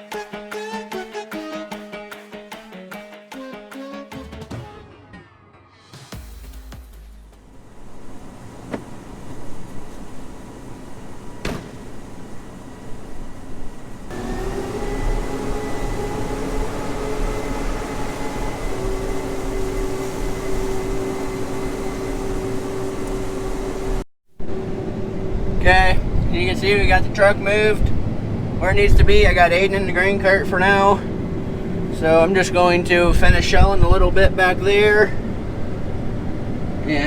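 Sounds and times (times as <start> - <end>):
steady whine: 6.1 - 37.0
heavy farm machinery rumbling: 7.5 - 24.0.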